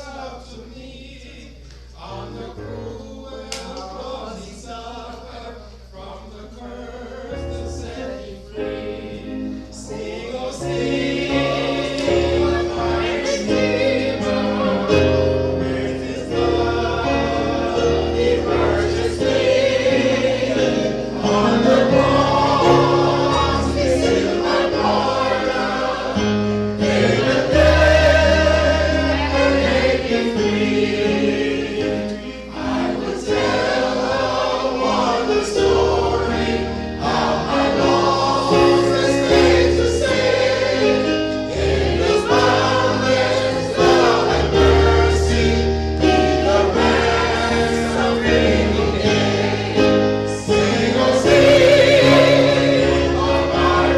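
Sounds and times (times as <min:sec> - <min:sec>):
choir singing a hymn: 0:00.0 - 0:53.9.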